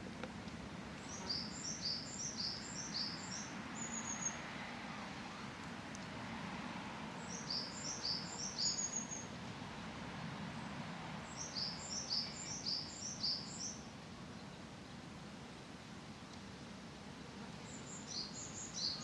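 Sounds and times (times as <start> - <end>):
songbird singing with trills: 1.0 - 4.4, 7.2 - 9.3, 11.2 - 14.6, 17.6 - 19.0.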